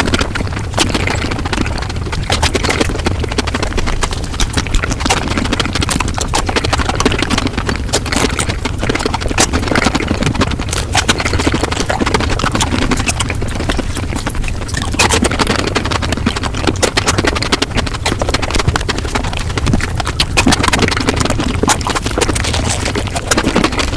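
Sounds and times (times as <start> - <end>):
fast chewing and crunching: 0.0 - 23.9.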